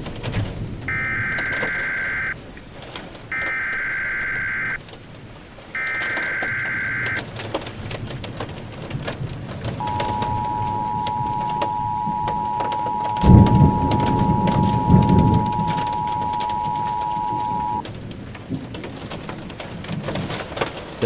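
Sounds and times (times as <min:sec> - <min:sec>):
low thunder rumble: 0:00.0 - 0:20.4
steady rain: 0:00.0 - 0:21.0
two-tone attention signal: 0:00.9 - 0:02.4, 0:03.4 - 0:04.8, 0:05.8 - 0:07.2, 0:09.8 - 0:17.8
warbling data tones: 0:00.9 - 0:02.4, 0:03.4 - 0:04.8, 0:05.8 - 0:07.2, 0:09.8 - 0:17.8.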